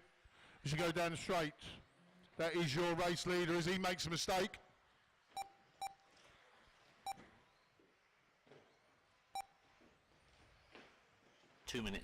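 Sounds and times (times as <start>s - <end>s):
short electronic beeps: 5.4s - 6.0s, 9.3s - 9.6s.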